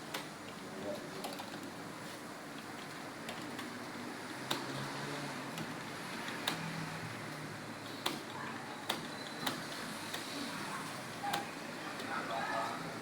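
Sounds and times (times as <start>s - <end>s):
computer keyboard keys clicking: 5.5s - 6.7s.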